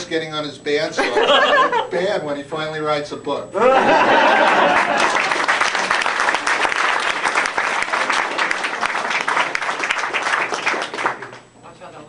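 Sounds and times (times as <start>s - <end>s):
audience laughter: 1.0s - 1.8s, 3.6s - 5.9s
audience clapping: 4.3s - 11.5s.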